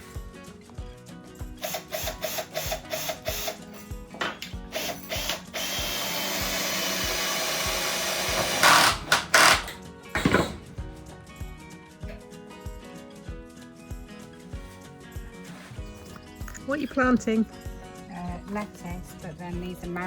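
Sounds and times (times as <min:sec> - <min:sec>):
background music with beat: 0:00.0 - 0:20.0
power drill running: 0:01.6 - 0:10.5
loud knocks: 0:08.5 - 0:11.0.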